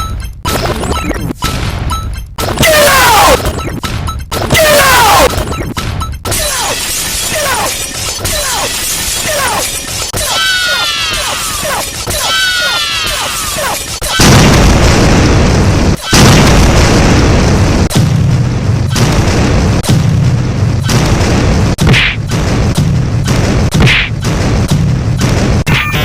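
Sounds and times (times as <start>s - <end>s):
explosion booms: 14.2s - 25.7s.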